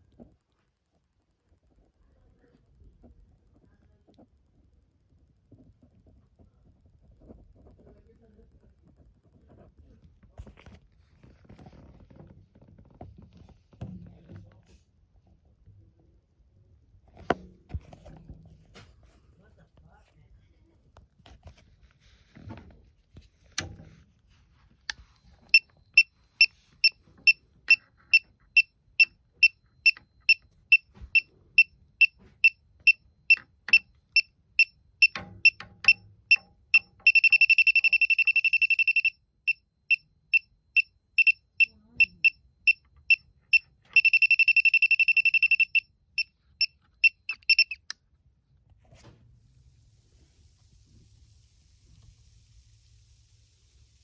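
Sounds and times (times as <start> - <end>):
leak detector beeping: 24.9 - 48.0
continuous alarm tone: 25.0 - 47.9.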